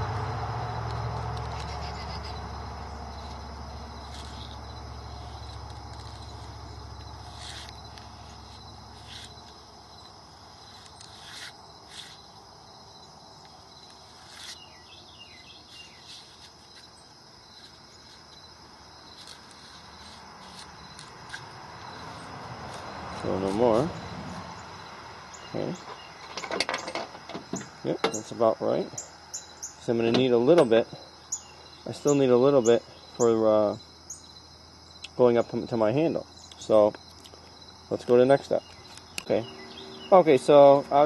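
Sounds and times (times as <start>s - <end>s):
low hum: 0.0s - 10.9s
insects trilling: 0.0s - 41.0s.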